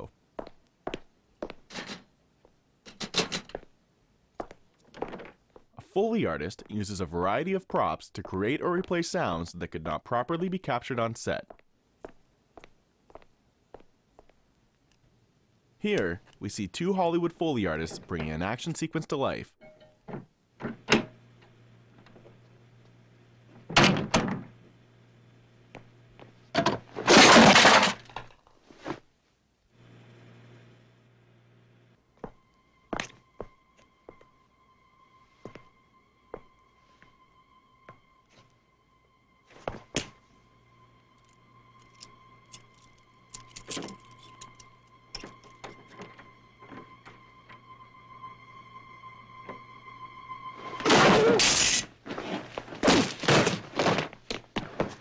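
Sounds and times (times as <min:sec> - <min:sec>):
faint steady high tone: 0:19.6 - 0:20.0
crash of breaking: 0:27.0 - 0:28.2.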